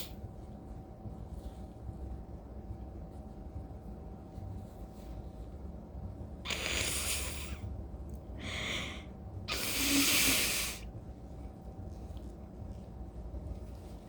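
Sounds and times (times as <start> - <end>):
person breathing heavily: 8.4 - 10.8.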